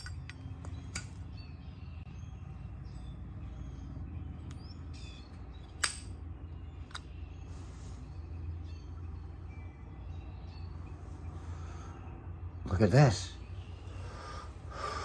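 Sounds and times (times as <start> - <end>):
sharp clicks: 0.0 - 1.3, 5.6 - 6.2
faint birds chirping: 0.0 - 15.0.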